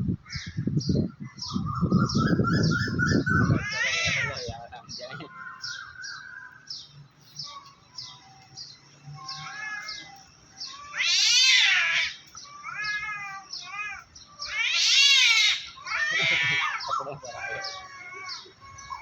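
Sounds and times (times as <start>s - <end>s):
cats yowling: 3.1s - 6.6s, 9.0s - 19.0s.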